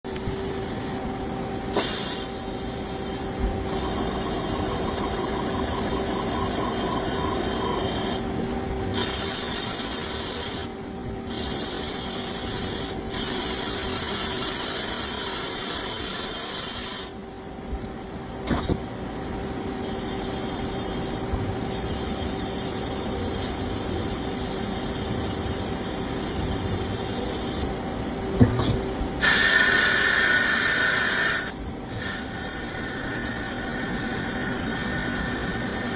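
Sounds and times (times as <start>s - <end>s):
machine hum: 0.1s - 16.4s, 17.0s - 35.9s
loud hissing: 1.8s - 8.3s.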